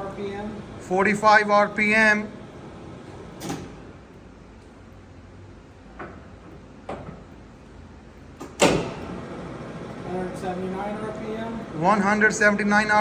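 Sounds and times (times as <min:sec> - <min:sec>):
lathe humming: 0:00.0 - 0:03.4, 0:08.9 - 0:13.0.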